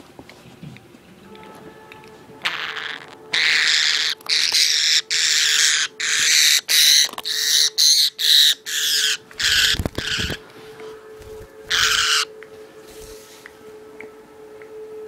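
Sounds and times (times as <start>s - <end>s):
budgerigars screeching: 2.4s - 10.4s, 11.7s - 12.3s.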